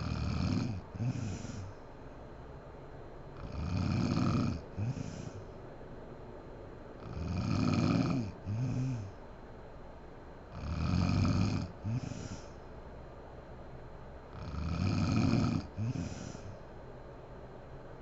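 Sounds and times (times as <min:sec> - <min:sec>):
woman snoring: 0:00.0 - 0:01.7, 0:03.4 - 0:05.5, 0:07.0 - 0:09.2, 0:10.6 - 0:12.5, 0:14.4 - 0:16.5.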